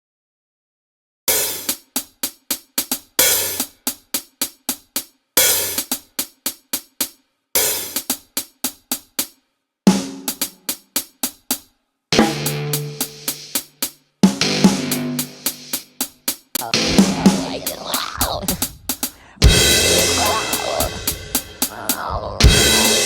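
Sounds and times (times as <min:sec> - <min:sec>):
hi-hat and snare hits: 0:01.3 - 0:16.6
cymbal crash: 0:12.2 - 0:12.8
bass note: 0:16.6 - 0:23.0.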